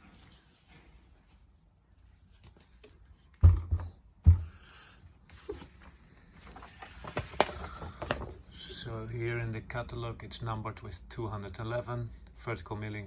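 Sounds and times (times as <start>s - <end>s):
heavy thumps: 3.4s - 4.7s.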